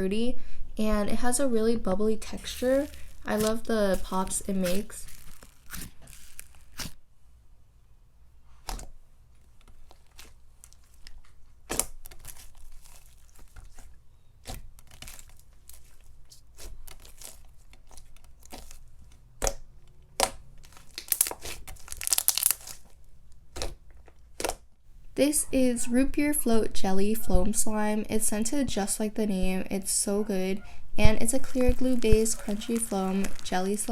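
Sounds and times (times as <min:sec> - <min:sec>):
slime bubbles popping: 0:02.3 - 0:07.0, 0:20.2 - 0:22.8, 0:31.2 - 0:33.9
slime squeezed by hand: 0:02.3 - 0:07.0, 0:20.2 - 0:22.9, 0:31.1 - 0:33.9.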